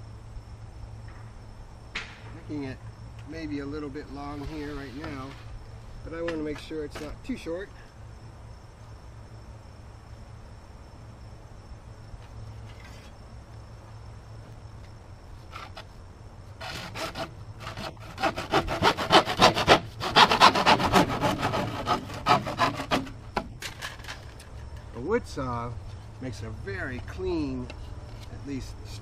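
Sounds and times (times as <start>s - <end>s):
hand saw cutting pipe: 16.6s - 23.2s.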